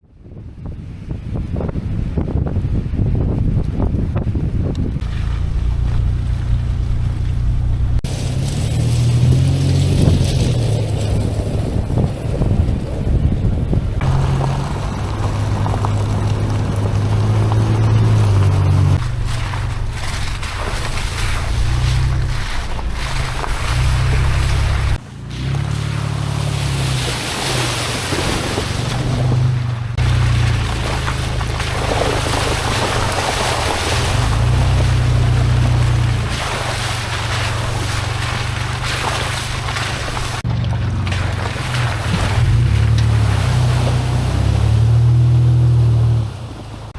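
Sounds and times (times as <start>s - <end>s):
road and wind noise: 0.0s - 46.9s
car engine drone: 4.1s - 46.9s.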